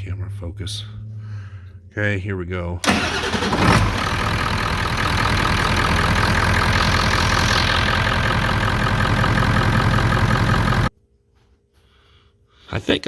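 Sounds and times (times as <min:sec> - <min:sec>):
diesel engine idling: 0:02.8 - 0:10.9
engine cranking: 0:02.8 - 0:10.9.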